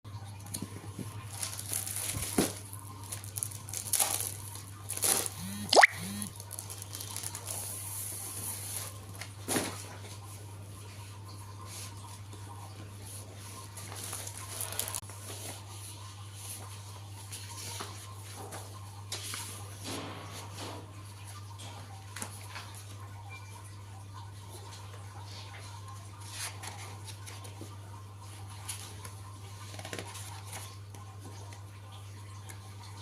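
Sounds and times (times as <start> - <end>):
paper rustling and crinkling: 0.6 - 5.4, 6.4 - 10.2, 13.6 - 15.6, 26.2 - 27.7, 28.6 - 31.4
paper ripping: 3.2 - 5.4.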